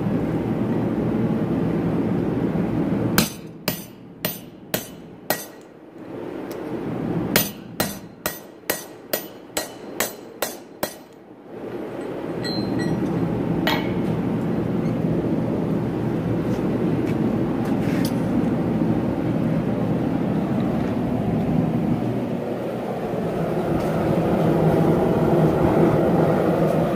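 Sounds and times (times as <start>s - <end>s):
steady rushing roar: 0.0s - 26.9s
hammer striking metal on anvil: 3.2s - 5.7s, 7.4s - 11.2s, 13.7s - 14.2s
light metal clinks: 11.9s - 14.0s.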